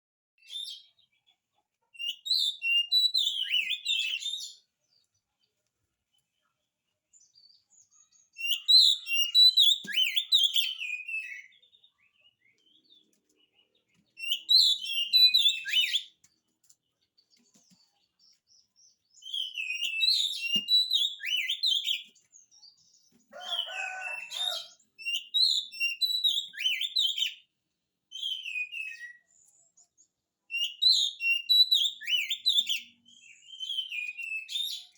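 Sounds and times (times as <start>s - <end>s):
bird singing whistled phrases: 2.0s - 4.6s, 8.4s - 11.7s, 14.2s - 16.2s, 19.1s - 22.1s, 23.5s - 27.4s, 28.1s - 29.3s, 30.5s - 34.9s.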